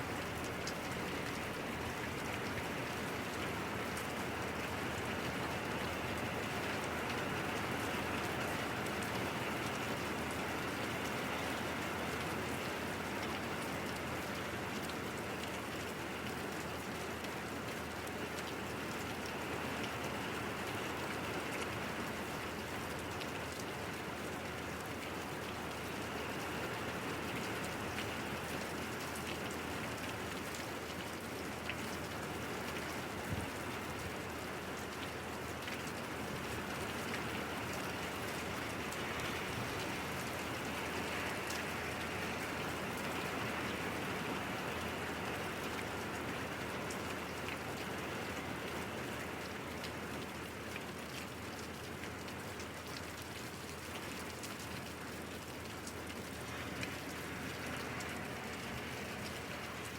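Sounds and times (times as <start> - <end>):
steady rain falling: 0.0 - 59.9.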